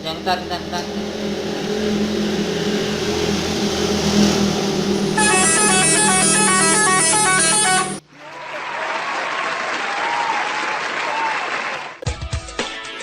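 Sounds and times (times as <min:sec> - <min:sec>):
musical bus horn: 0:05.2 - 0:08.0
steady noisy din: 0:05.2 - 0:08.0.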